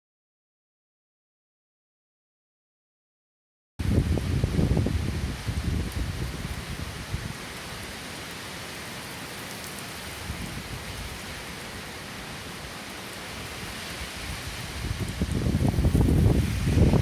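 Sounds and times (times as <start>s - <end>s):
heavy rain falling: 3.8s - 17.0s.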